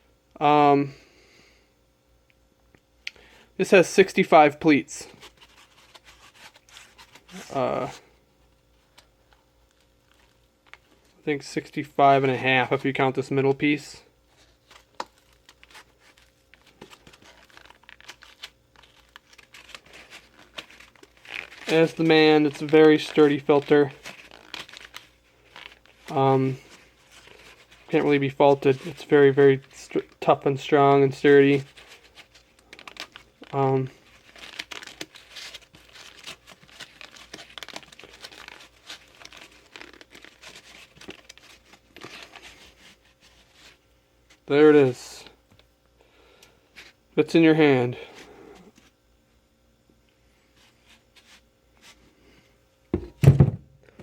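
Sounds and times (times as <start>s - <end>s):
paper crinkling and metal clicking: 14.4s - 43.8s.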